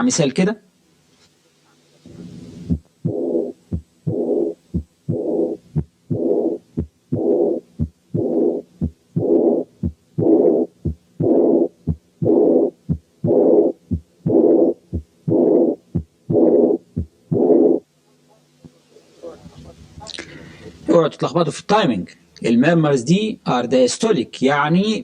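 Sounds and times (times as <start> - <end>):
hissing heart murmur: 2.0 - 17.8
heart sounds: 2.1 - 17.8.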